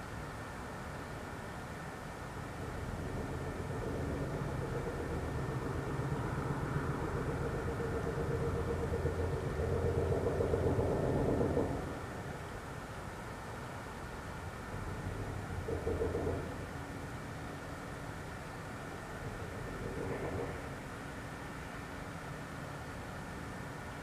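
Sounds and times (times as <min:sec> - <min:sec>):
low pulsating knocking drone: 0:02.4 - 0:12.6, 0:14.4 - 0:21.0.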